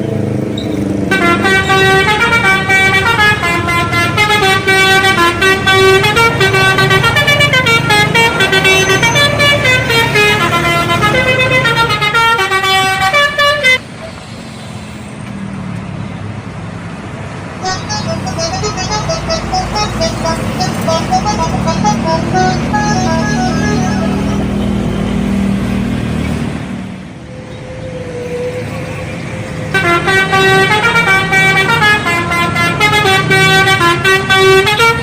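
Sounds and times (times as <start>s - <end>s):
bus engine running: 0.0s - 35.0s
road noise: 0.0s - 35.0s
bus horn playing melody: 1.1s - 13.8s, 17.6s - 25.3s, 29.6s - 35.0s.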